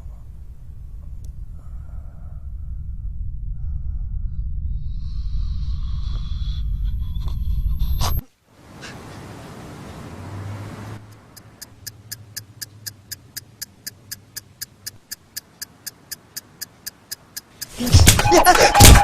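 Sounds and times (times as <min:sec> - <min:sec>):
steady low noise: 0:00.0 - 0:08.2
alarm clock ticking: 0:11.0 - 0:19.0.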